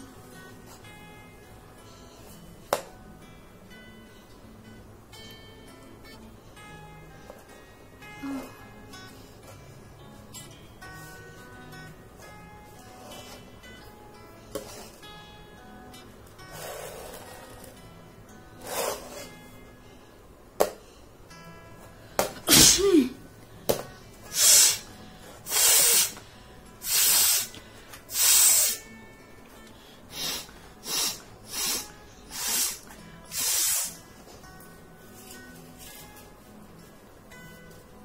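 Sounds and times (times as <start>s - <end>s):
woman sneezing: 22.5s - 23.2s
sharp breaths through nose: 24.3s - 28.8s, 29.8s - 34.0s.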